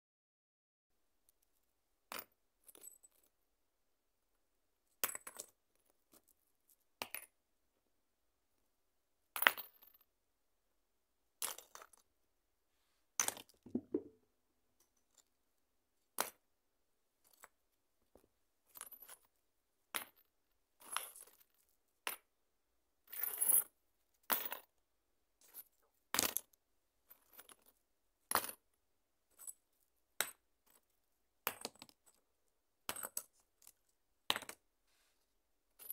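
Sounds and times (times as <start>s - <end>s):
stones clacking together: 13.7s - 14.2s.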